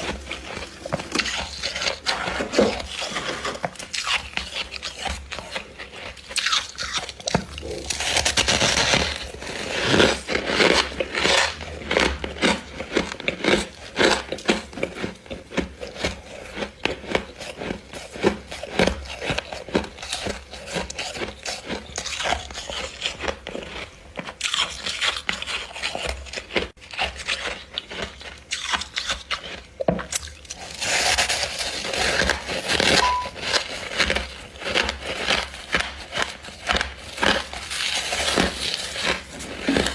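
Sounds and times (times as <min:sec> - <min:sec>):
frost being bitten and chewed: 0:00.0 - 0:39.9.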